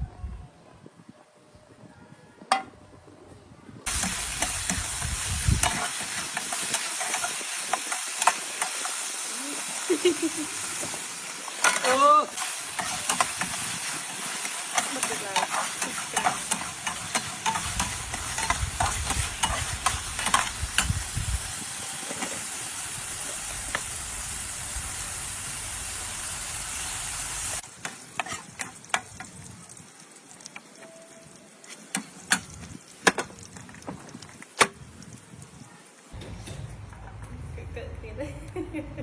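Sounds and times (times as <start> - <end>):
food sizzling in a pan: 3.9 - 34.2.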